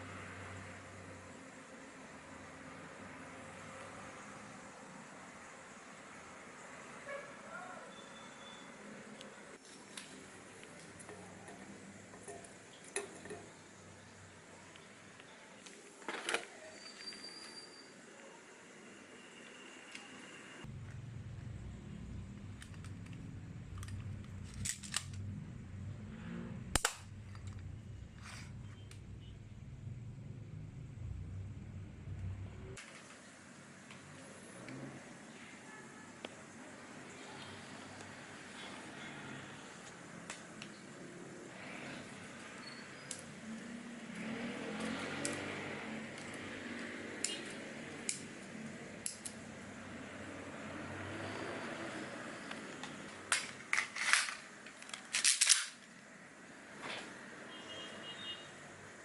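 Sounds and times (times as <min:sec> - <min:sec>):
toy pistol clicks: 0:26.7 - 0:27.1, 0:49.0 - 0:49.4
airsoft pistol clicking: 0:26.8 - 0:27.1.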